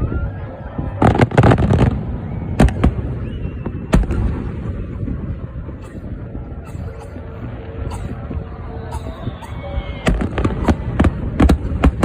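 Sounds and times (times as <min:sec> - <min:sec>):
steady low rumble: 0:00.0 - 0:12.0
fireworks bursting: 0:01.0 - 0:08.4, 0:10.0 - 0:12.0.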